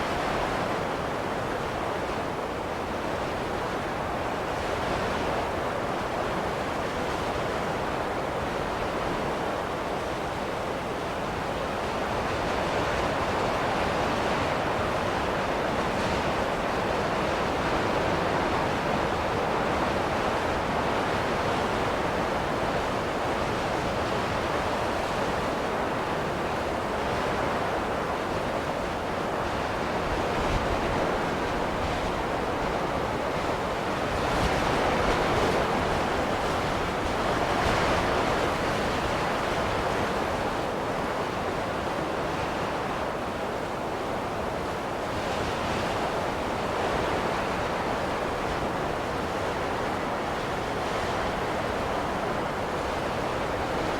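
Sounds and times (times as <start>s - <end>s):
wind blowing in a snowstorm: 0.0s - 53.9s.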